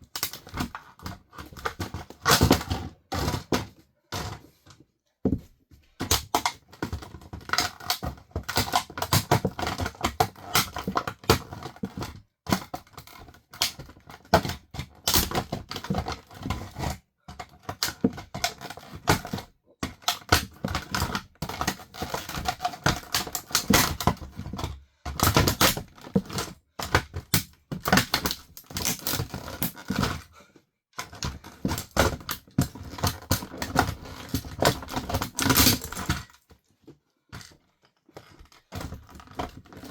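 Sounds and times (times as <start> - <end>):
plastic cracking under heels: 17.8 - 30.2, 31.0 - 36.6.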